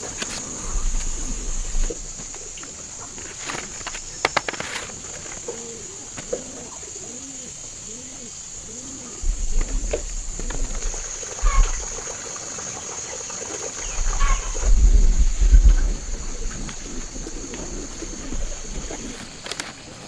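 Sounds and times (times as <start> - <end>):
dove cooing: 0.0 - 12.4, 13.8 - 20.0
steady high hiss: 0.0 - 20.0.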